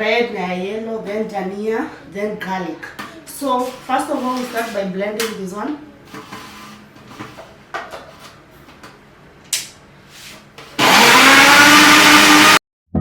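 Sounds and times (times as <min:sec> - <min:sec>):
blender motor running: 0:10.8 - 0:12.6.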